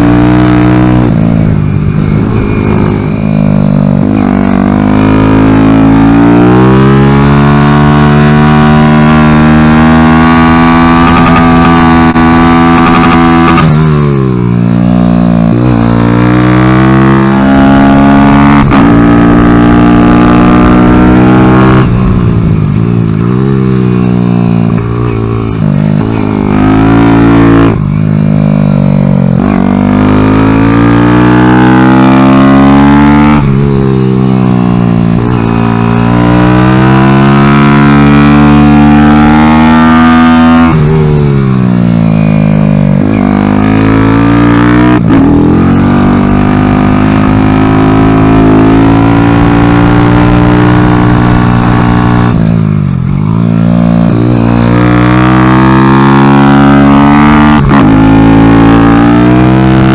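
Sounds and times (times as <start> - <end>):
motorcycle engine revving: 0.0 - 59.9.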